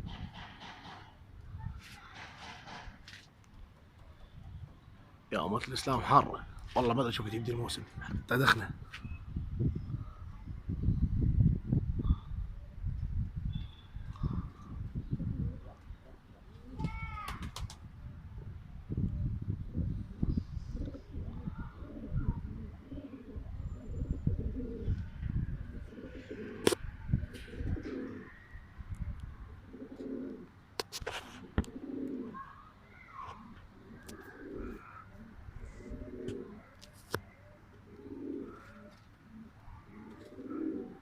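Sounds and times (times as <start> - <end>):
pigeons cooing: 14.1 - 17.1, 19.6 - 28.6, 29.5 - 30.6, 31.4 - 41.0.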